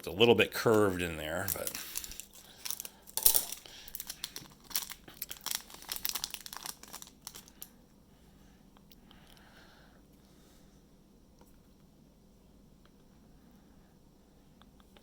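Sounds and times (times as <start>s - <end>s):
plastic wrapper crinkling: 0.2s - 7.7s.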